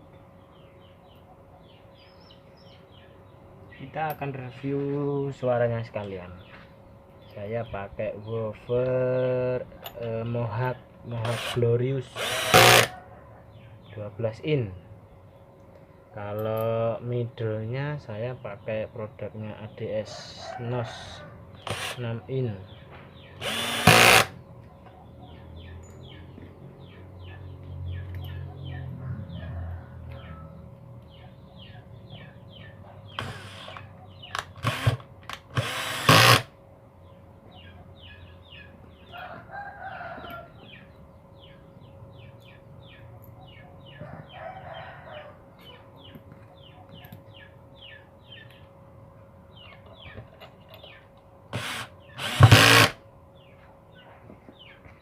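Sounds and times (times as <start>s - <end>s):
power drill driving screws: 11.2s - 11.6s, 12.2s - 12.9s, 21.6s - 22.0s, 23.4s - 24.4s, 33.2s - 33.8s, 34.4s - 36.5s, 51.5s - 53.0s
chickens clucking: 24.6s - 33.2s, 37.4s - 51.1s.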